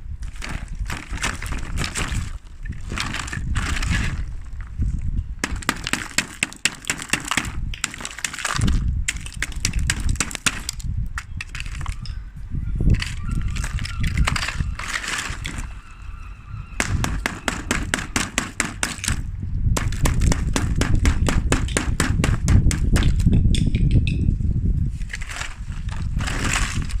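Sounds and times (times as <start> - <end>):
ice cubes crunching: 0.2 - 4.5, 5.4 - 12.0, 25.1 - 27.0.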